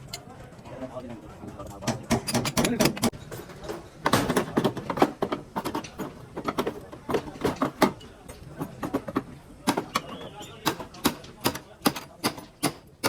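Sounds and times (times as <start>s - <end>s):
clatter of knocks and scrapes: 1.5s - 9.4s.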